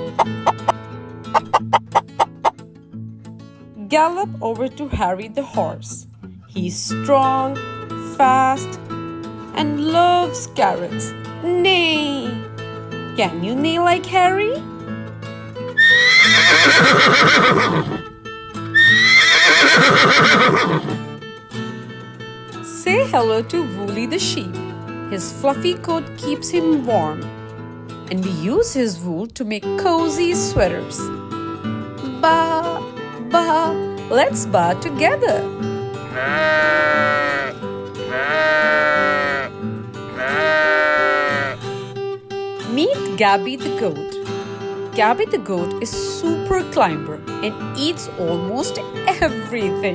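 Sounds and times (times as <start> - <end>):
background music: 0.0 - 49.9
horse whinnying: 0.1 - 0.8, 1.4 - 2.6, 15.8 - 18.1, 18.7 - 21.2, 36.1 - 41.6
sheep bleating: 15.8 - 17.8, 18.8 - 20.8, 36.0 - 41.7.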